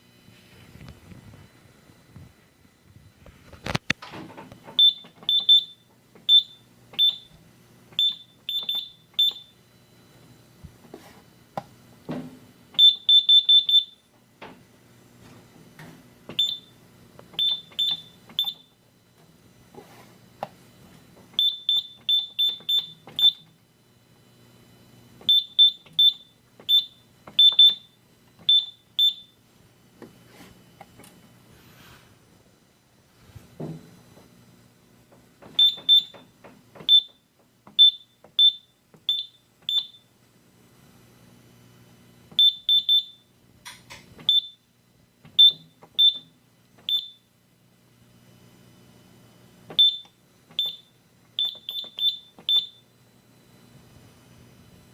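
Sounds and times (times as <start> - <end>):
high-pitched keypad beeps: 8.0 - 9.5, 17.4 - 18.7.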